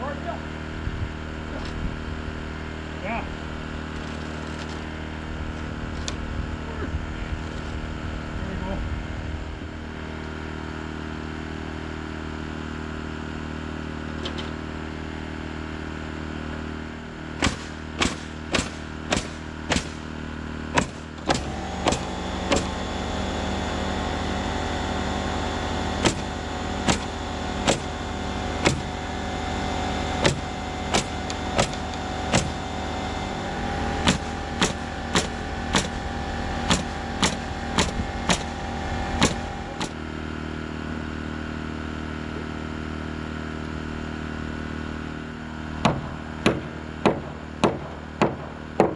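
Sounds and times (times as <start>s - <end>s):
air compressor humming: 0.1s - 9.8s, 16.9s - 41.0s
pneumatic nailer firing: 3.9s - 5.0s, 7.4s - 7.8s, 17.3s - 23.4s, 25.7s - 40.0s.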